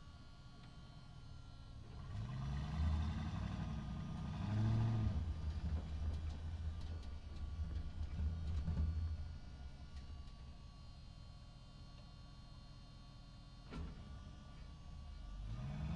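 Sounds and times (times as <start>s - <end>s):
truck engine rumbling: 1.9s - 9.8s.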